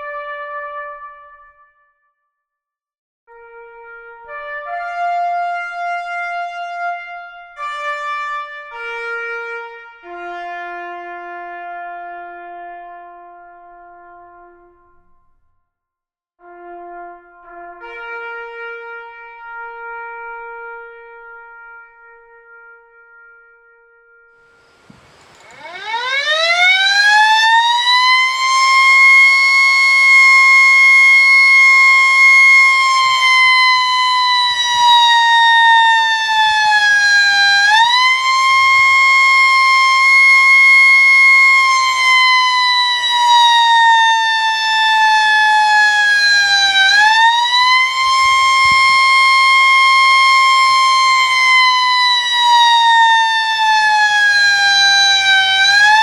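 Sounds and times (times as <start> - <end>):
warning siren wailing: 24.4 - 56.0.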